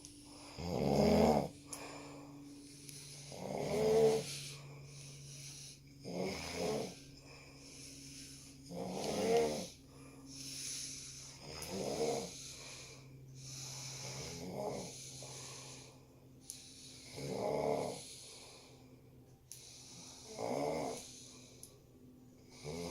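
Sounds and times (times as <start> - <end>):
soft breathy hiss: 0.0 - 22.9
rasping snores: 0.5 - 1.6, 3.2 - 4.5, 6.0 - 7.0, 8.7 - 9.8, 11.4 - 12.6, 13.4 - 15.8, 16.9 - 18.6, 19.9 - 21.3, 22.5 - 22.9.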